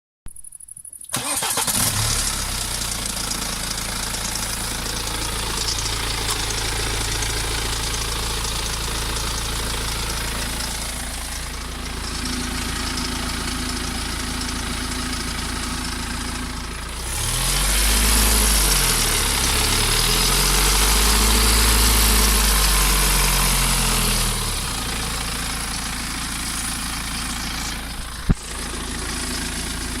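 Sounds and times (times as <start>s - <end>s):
diesel engine starting and revving: 1.1s - 30.0s.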